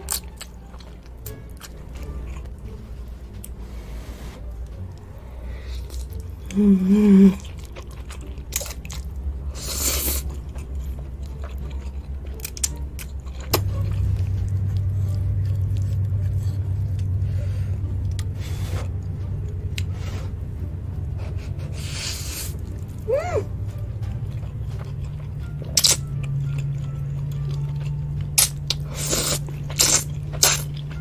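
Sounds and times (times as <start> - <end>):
steady low hum: 0.0 - 31.0
wet eating clicks and smacks: 10.3 - 13.7, 24.3 - 31.0
noodle slurp: 28.8 - 30.7.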